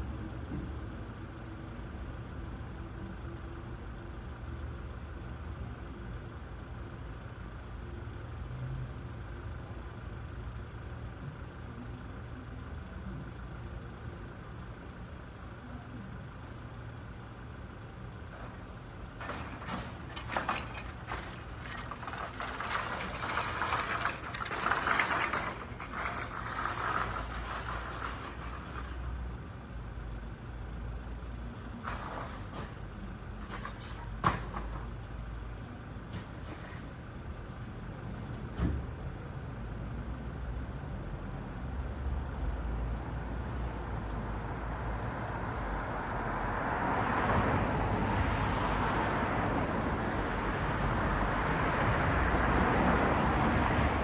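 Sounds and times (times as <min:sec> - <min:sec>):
low engine rumble: 0:00.0 - 0:54.0
vehicle passing: 0:45.4 - 0:54.0.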